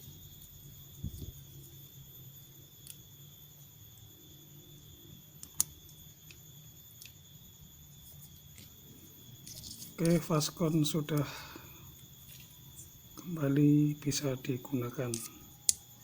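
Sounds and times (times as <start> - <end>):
faint ticks: 9.4 - 10.2
faint high-pitched tone: 12.7 - 16.0.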